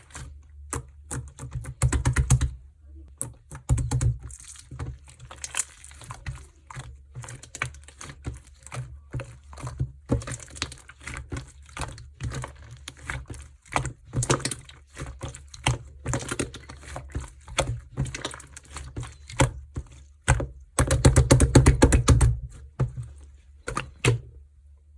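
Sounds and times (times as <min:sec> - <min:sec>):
slime crackling: 0:03.6 - 0:22.2.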